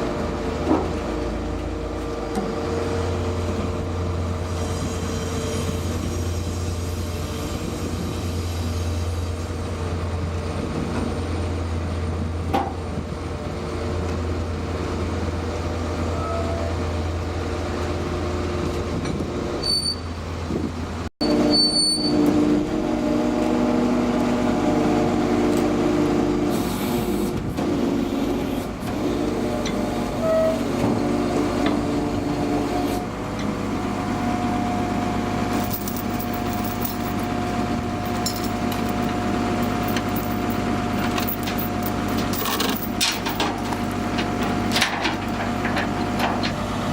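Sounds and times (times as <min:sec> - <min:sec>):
brief squeaks: 0:19.6 - 0:20.1, 0:21.2 - 0:22.2
diesel truck engine running: 0:22.4 - 0:46.9.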